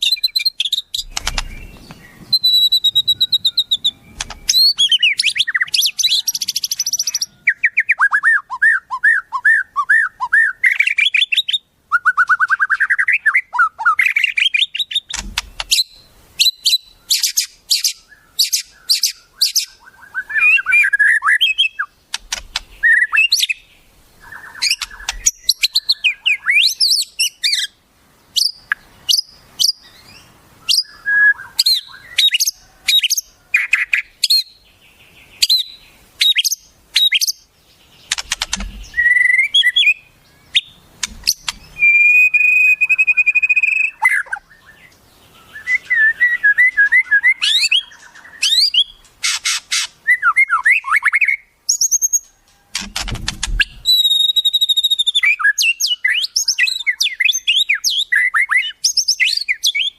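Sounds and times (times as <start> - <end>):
harsh bird notes: 0.0 - 7.3, 38.0 - 44.7
bird steady whistle: 0.0 - 22.0, 22.7 - 27.7, 30.6 - 34.6, 35.4 - 37.4, 38.4 - 44.8, 45.4 - 52.4, 53.6 - 59.9
songbirds chirping and trilling: 0.0 - 59.9.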